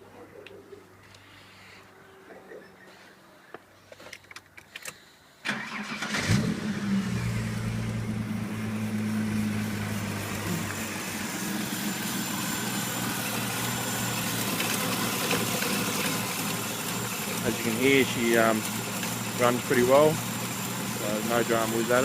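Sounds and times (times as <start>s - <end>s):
car engine idling: 5.6s - 22.0s.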